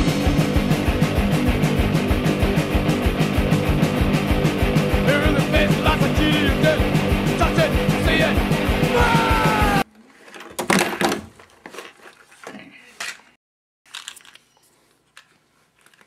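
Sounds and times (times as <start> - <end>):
driving drum beat: 0.0 - 9.8
fast rock music: 0.0 - 9.8.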